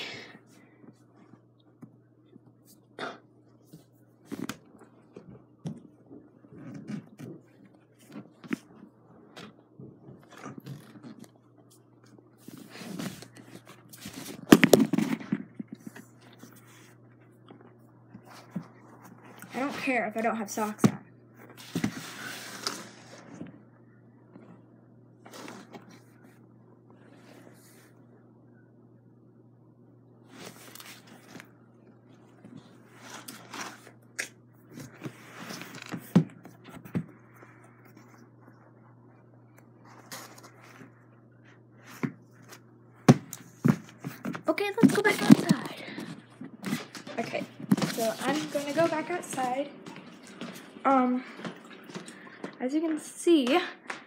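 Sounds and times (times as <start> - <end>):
rustling and scraping: 3.6 - 20.3, 21.4 - 23.6, 30.3 - 34.0, 34.6 - 42.7, 43.3 - 52.6.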